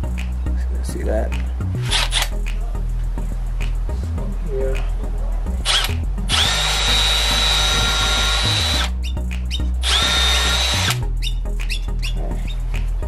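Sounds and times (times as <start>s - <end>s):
drill motor whine: 5.7s - 8.9s, 9.8s - 11.0s.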